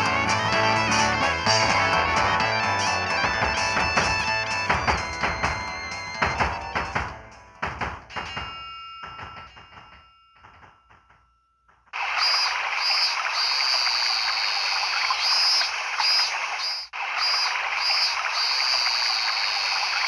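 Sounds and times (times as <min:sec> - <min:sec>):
electronic ringtone held tone: 0:00.0 - 0:07.2.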